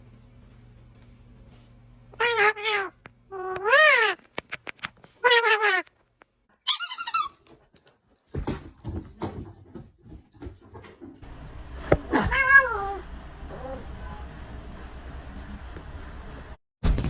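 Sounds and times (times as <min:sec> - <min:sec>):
cat meowing: 0:12.1 - 0:13.0.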